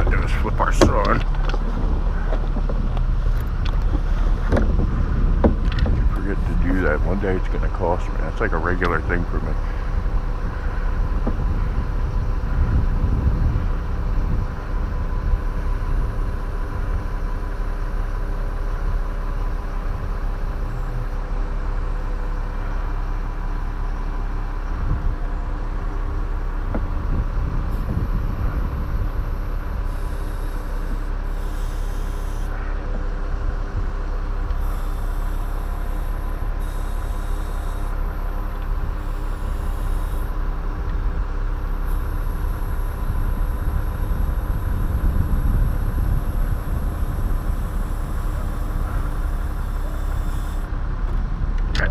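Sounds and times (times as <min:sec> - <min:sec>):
chainsaw idling: 0:27.7 - 0:32.6, 0:34.4 - 0:40.8, 0:41.4 - 0:50.7.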